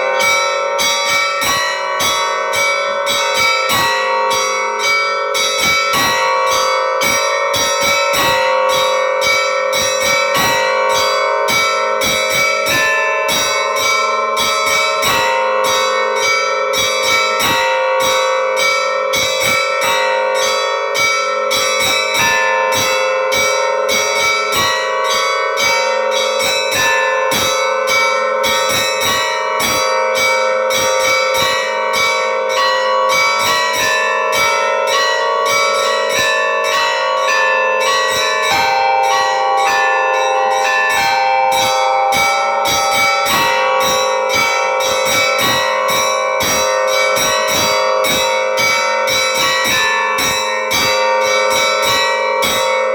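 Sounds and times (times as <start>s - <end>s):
larger bells ringing: 0.0s - 52.9s
small church bells struck quickly: 0.0s - 52.9s.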